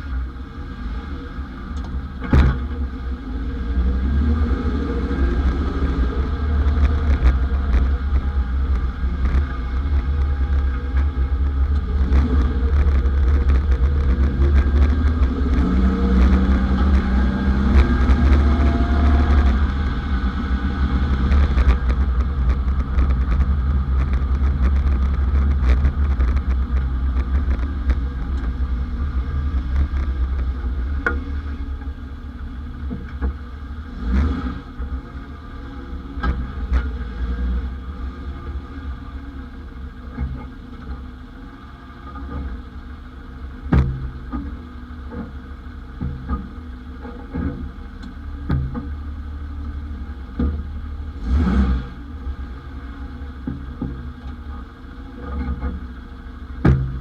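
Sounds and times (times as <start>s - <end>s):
car low rumble: 0.0s - 57.0s.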